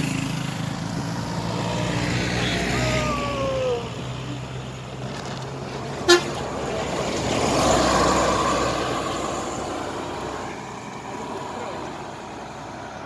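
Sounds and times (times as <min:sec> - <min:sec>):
vehicle passing: 0:00.0 - 0:13.0
bus horn falling glide: 0:06.0 - 0:06.4
short sharp horn toot: 0:06.1 - 0:06.4.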